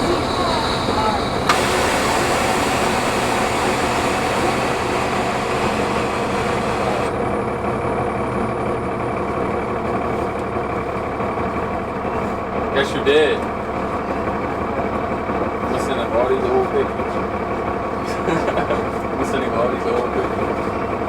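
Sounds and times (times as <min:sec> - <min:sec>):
hiss: 0:00.0 - 0:07.1
diesel bus engine running: 0:00.0 - 0:21.0.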